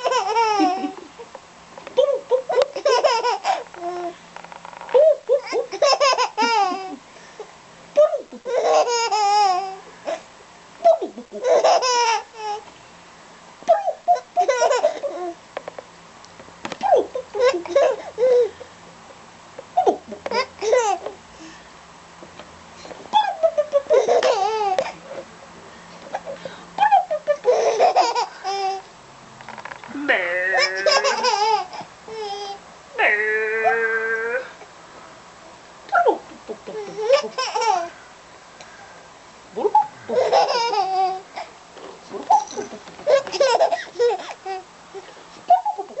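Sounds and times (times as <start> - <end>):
small child laughing: 0.0 - 1.3, 2.0 - 4.2, 5.0 - 7.0, 8.3 - 10.2, 10.9 - 12.6, 13.7 - 15.4, 16.9 - 18.5, 23.1 - 25.0, 26.2 - 28.9, 30.0 - 32.6, 36.4 - 38.0, 39.7 - 41.5, 42.3 - 44.7, 45.5 - 46.0.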